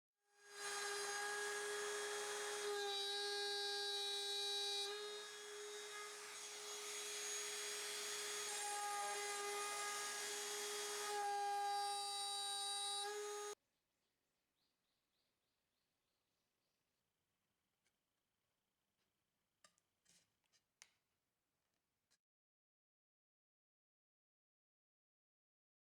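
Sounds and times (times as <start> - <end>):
router bit cutting wood: 0.4 - 13.6
trim router high whine: 0.4 - 13.6.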